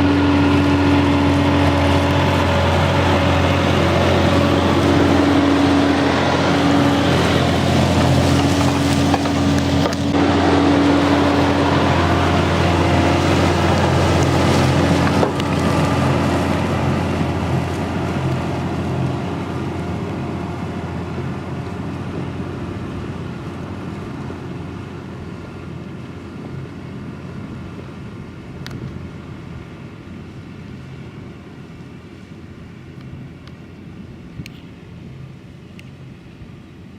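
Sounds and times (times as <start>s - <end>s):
tractor diesel engine running: 0.0s - 36.9s.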